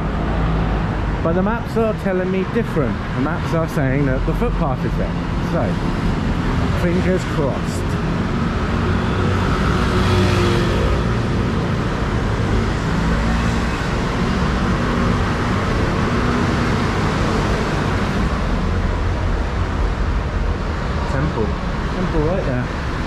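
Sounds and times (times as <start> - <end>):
road traffic passing: 0.0 - 23.0.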